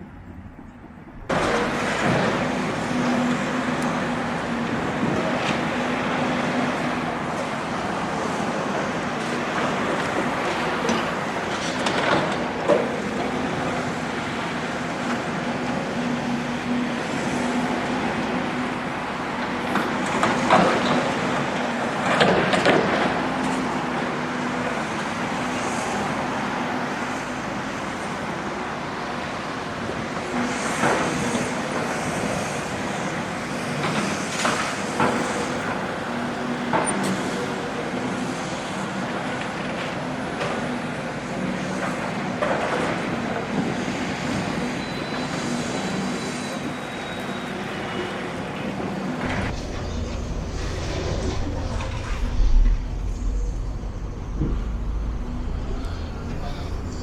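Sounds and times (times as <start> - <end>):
excavator diesel engine running: 0.0 - 57.0
rough bursts of noise: 48.7 - 57.0.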